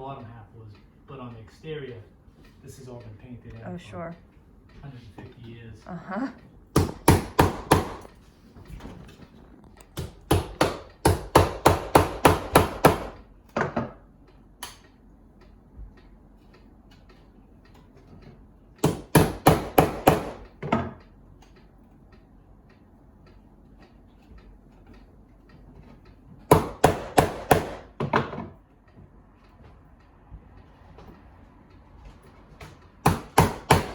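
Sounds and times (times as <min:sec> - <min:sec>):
hammer tapping on wood: 0:06.7 - 0:08.1, 0:09.9 - 0:14.0, 0:18.8 - 0:21.1, 0:26.4 - 0:29.1, 0:32.6 - 0:33.9.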